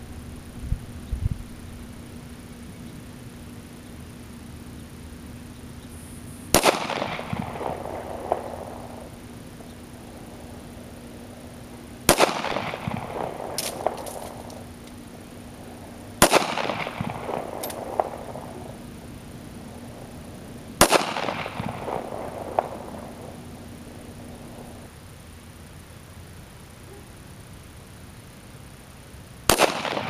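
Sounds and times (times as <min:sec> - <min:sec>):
pistol shots echoing: 0:06.5 - 0:09.3, 0:10.0 - 0:19.0, 0:20.8 - 0:24.8, 0:29.5 - 0:30.0.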